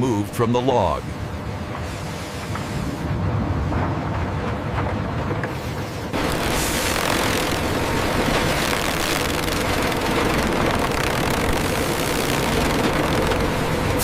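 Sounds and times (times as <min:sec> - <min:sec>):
log-debarking machinery running: 0:00.0 - 0:14.0
mid-pitched hum: 0:00.0 - 0:14.0.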